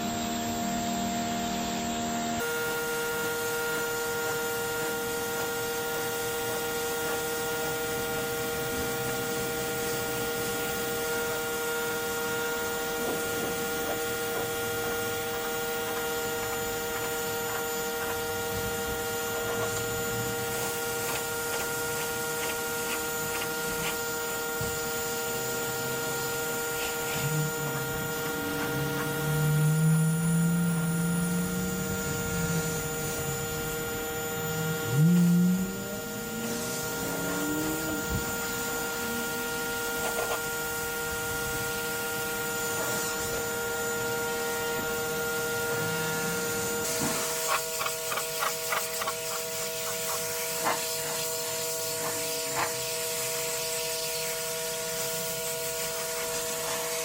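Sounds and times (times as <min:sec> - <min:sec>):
pressure washer spraying: 0:04.8 - 0:45.1, 0:45.7 - 0:57.0
low wavering sound: 0:24.6 - 0:42.5.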